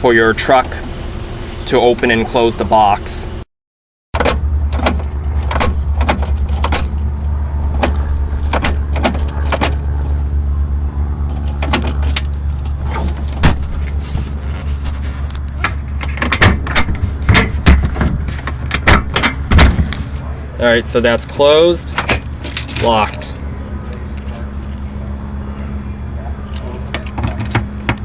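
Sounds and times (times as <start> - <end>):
engine hum: 0.0 - 3.4, 4.2 - 28.0
toolbox latch clicks and knocks: 4.2 - 7.0, 7.8 - 9.8
key jangling in lock: 5.4 - 7.0, 21.9 - 23.2.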